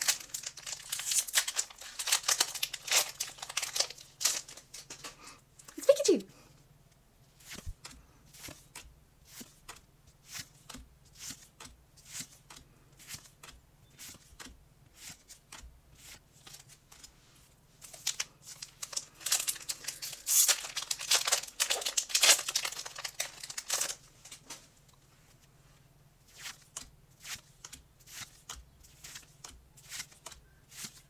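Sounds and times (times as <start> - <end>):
foil pack crinkling and tearing: 0.0 - 6.0, 17.8 - 24.8.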